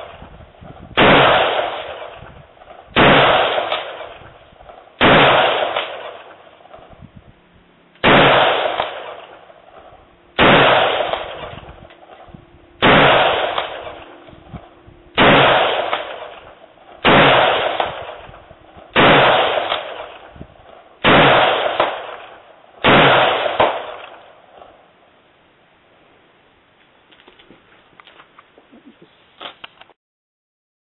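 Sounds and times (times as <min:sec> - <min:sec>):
rifle shots with echo: 0:00.9 - 0:06.9, 0:08.0 - 0:24.9.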